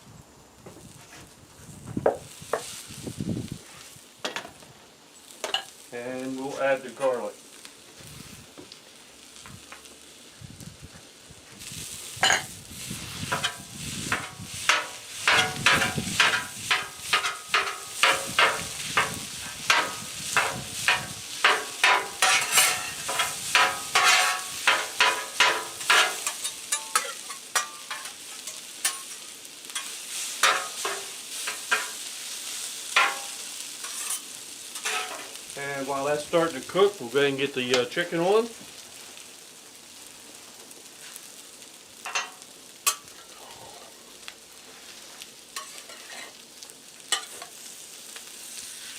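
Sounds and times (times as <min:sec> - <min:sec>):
rice sizzling on a griddle: 0:00.0 - 0:48.9
metal spatulas scraping and chopping: 0:19.7 - 0:29.1, 0:33.0 - 0:34.2, 0:34.8 - 0:35.3, 0:45.6 - 0:46.3.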